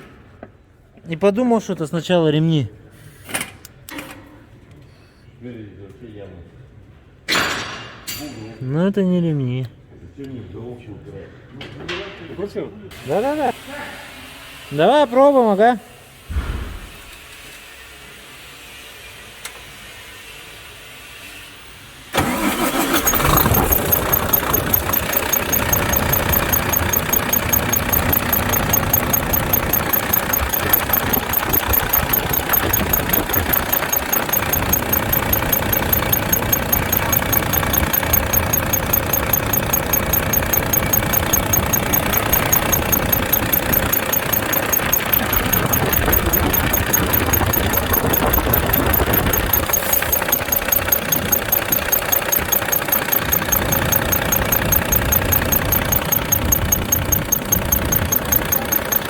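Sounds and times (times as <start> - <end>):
diesel engine starting and idling: 22.2 - 59.0
rapid high-pitched squeak: 22.4 - 59.0.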